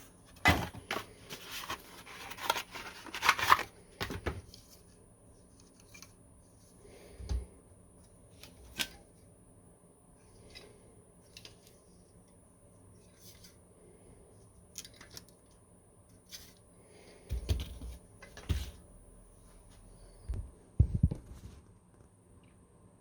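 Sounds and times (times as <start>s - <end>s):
packaging rustling and crinkling: 0.4s - 4.3s.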